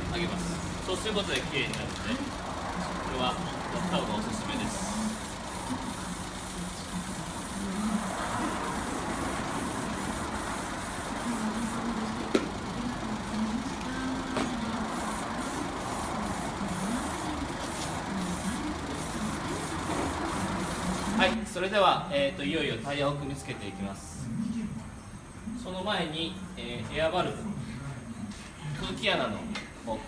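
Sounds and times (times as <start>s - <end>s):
spray paint hissing: 0.1s - 21.4s.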